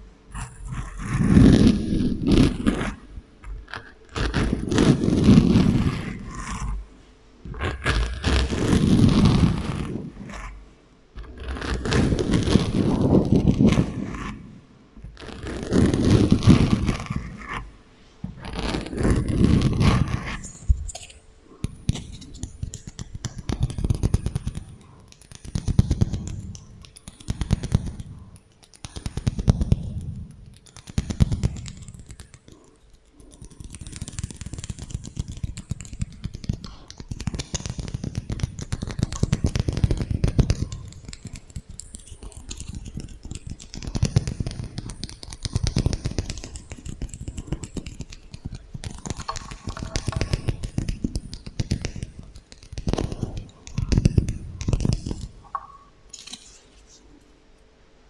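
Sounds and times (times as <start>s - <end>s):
tapping and scratching on small objects: 15.0s - 57.0s.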